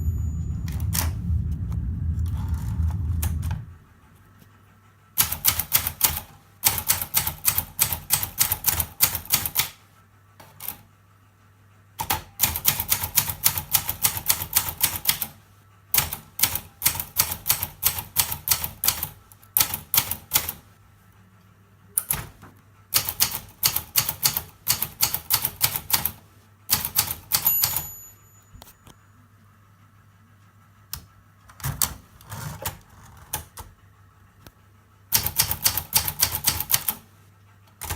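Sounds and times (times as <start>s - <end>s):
thin ringing bell: 0.0s - 1.1s, 27.5s - 29.1s
typewriter key strikes: 26.7s - 27.9s.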